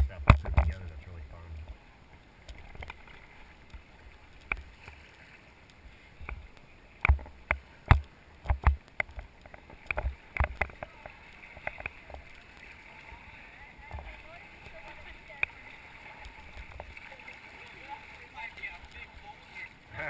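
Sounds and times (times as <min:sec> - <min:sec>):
paddles knocking on raft: 0:00.0 - 0:00.9, 0:06.3 - 0:19.4
low water noise: 0:00.0 - 0:20.0.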